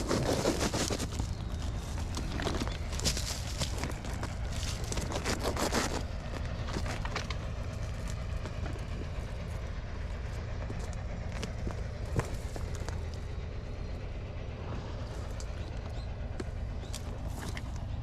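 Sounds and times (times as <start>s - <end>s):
crackling and rustling: 0.0s - 9.6s, 10.2s - 13.6s.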